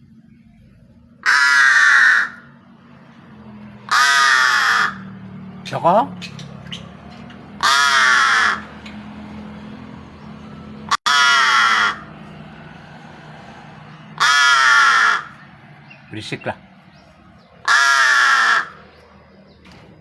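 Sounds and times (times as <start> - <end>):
crow cawing: 1.2 - 2.6, 3.8 - 5.3, 7.5 - 8.8, 10.9 - 16.0, 16.9 - 19.2.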